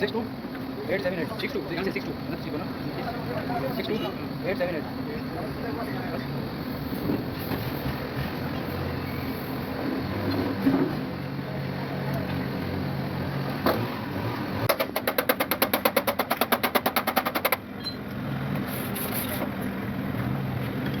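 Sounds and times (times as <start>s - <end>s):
steady background hum: 0.0s - 21.0s
fast sharp clicks: 14.7s - 17.6s.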